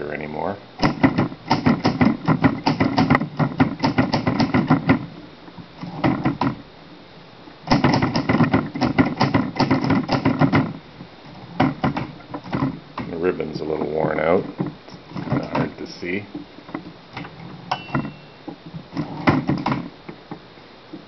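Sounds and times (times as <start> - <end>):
manual typewriter key strikes: 0.8 - 4.9.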